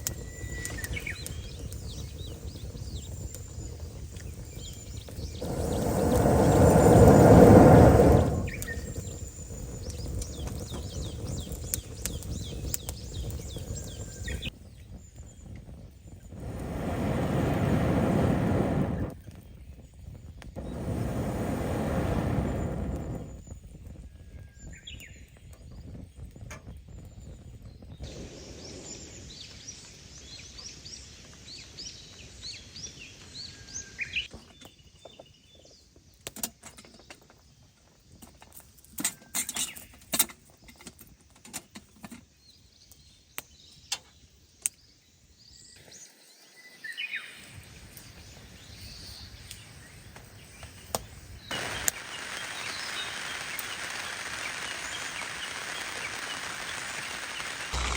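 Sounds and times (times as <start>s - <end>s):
birds chirping: 0.1s - 15.5s, 46.8s - 57.9s
rush of noise: 5.4s - 8.8s, 16.4s - 19.2s, 20.6s - 23.4s, 55.2s - 57.9s
outdoor background hiss: 20.6s - 23.5s, 36.1s - 57.9s.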